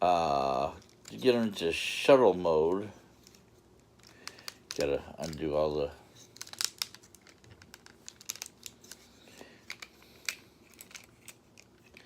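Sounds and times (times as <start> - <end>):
plastic toy parts clicking: 3.2 - 5.5, 6.2 - 12.0.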